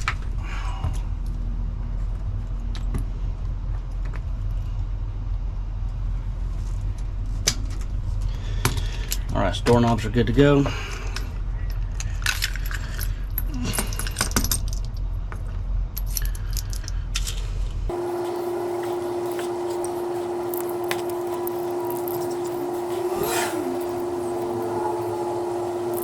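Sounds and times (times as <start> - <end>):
steady hum: 17.8 - 26.0.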